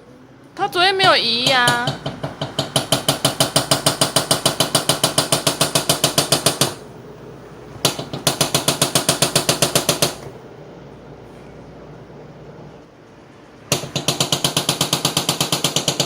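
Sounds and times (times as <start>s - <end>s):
washing machine knocking: 0.9s - 10.5s, 13.7s - 16.0s.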